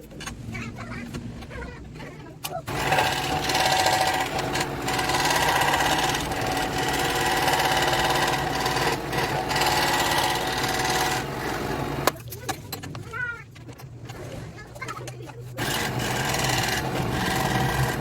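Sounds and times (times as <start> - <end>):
scroll saw cutting plastic pipe: 2.7 - 12.2, 15.6 - 18.0.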